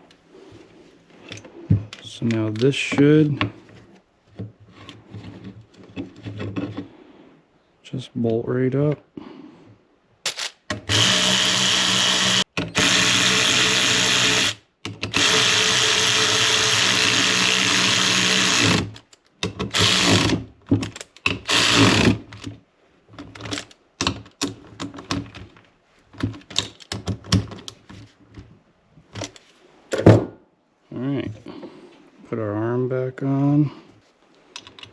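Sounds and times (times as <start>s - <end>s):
power drill running: 10.8s - 18.9s, 19.7s - 20.4s, 21.5s - 22.2s.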